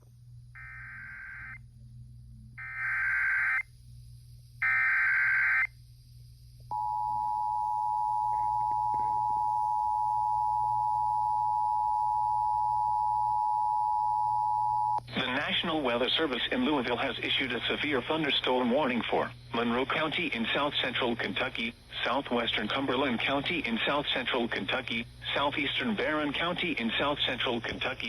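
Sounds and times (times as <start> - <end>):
digital data tone bursts: 2.6 - 3.6.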